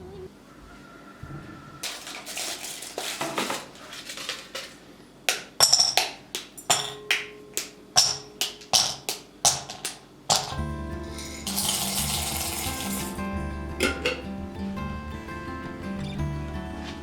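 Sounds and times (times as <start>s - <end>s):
utensil scraping a dish: 1.8s - 4.8s
utensil striking a dish: 5.3s - 10.6s.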